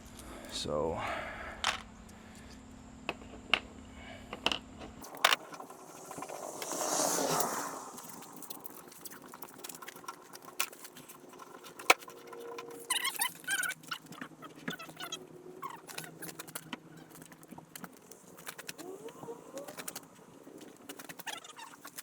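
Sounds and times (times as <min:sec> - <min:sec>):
brief rushing noise: 0:05.0 - 0:09.0.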